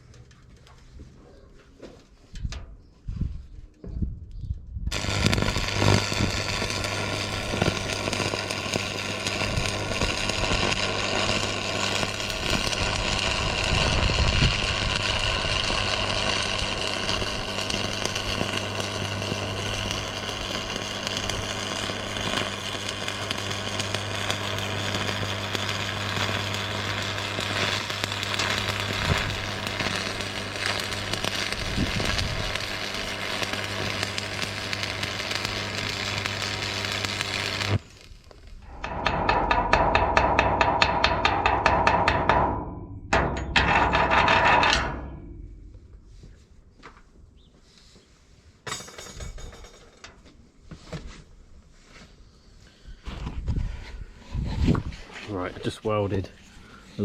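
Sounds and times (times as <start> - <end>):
arc welder crackling sizzle: 4.9 - 42.5, 43.1 - 46.0.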